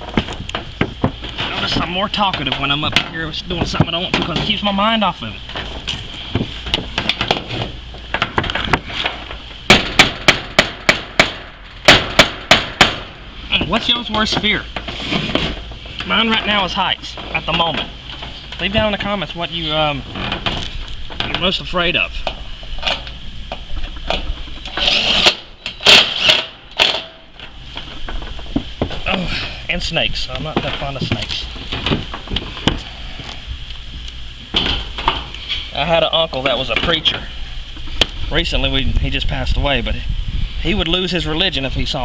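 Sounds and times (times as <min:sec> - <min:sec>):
knocks and clanks on tin roof: 0:00.0 - 0:29.4, 0:30.1 - 0:32.9, 0:34.4 - 0:35.3
hammer on tin roof: 0:09.7 - 0:19.2.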